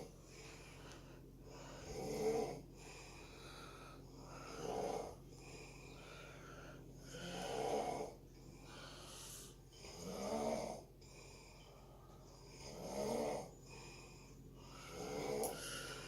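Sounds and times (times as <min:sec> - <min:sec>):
quiet breaths: 0:00.0 - 0:16.0
loud snoring: 0:01.6 - 0:02.7, 0:04.3 - 0:05.2, 0:07.0 - 0:08.2, 0:09.8 - 0:11.3, 0:12.4 - 0:13.9, 0:14.7 - 0:16.0.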